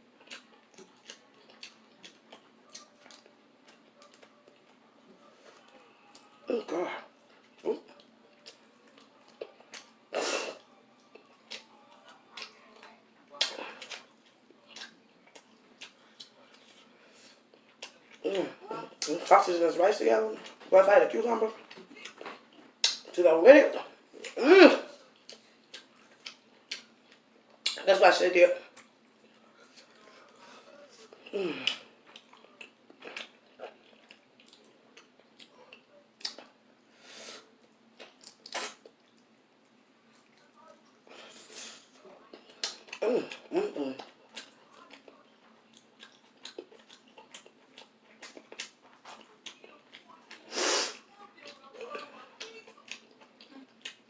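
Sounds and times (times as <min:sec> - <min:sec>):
chewing and mouth clicks: 0:00.2 - 0:04.8, 0:07.4 - 0:10.0, 0:11.0 - 0:18.2, 0:21.6 - 0:23.2, 0:25.1 - 0:27.8, 0:31.1 - 0:36.6, 0:37.9 - 0:40.5, 0:42.3 - 0:50.5, 0:51.4 - 0:54.0.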